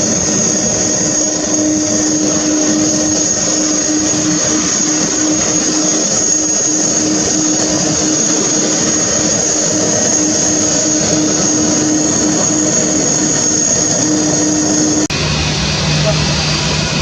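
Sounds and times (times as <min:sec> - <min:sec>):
jet engines running: 0:00.0 - 0:17.0.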